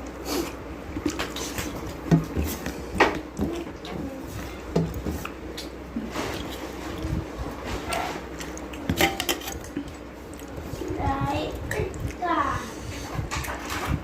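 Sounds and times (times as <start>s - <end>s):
food being chewed: 0.4s - 12.2s
dishes clicking: 8.4s - 9.8s.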